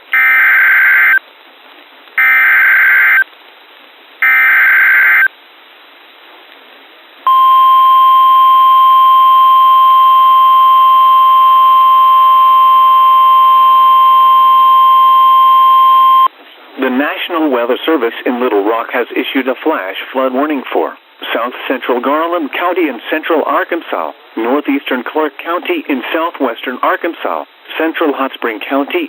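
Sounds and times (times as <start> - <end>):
steady warning alarm tone: 4.2 - 5.3, 7.3 - 16.3.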